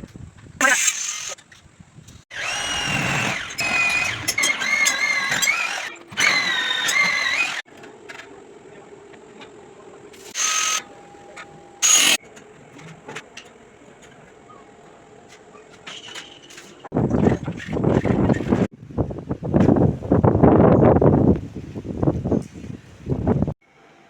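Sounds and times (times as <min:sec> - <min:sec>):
power tool squealing on steel: 0:02.3 - 0:07.6, 0:10.3 - 0:12.2.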